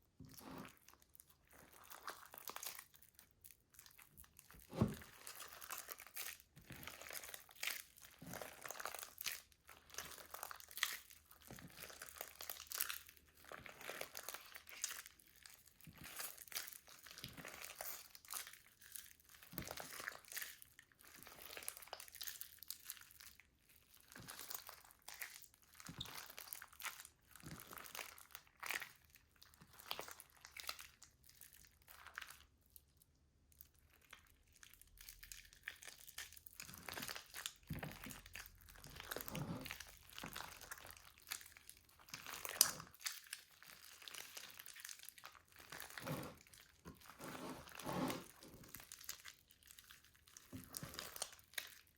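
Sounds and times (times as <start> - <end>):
slime crinkling and crackling: 0.0 - 51.9.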